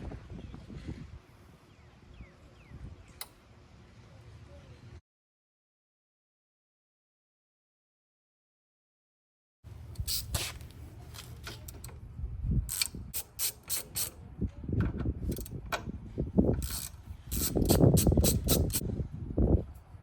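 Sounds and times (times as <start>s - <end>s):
metal clicks and ratcheting: 12.7s - 14.2s, 16.5s - 18.8s.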